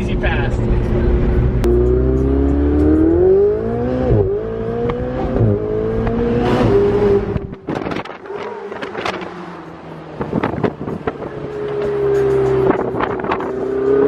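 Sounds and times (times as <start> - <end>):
car engine accelerating hard: 0.0 - 14.0.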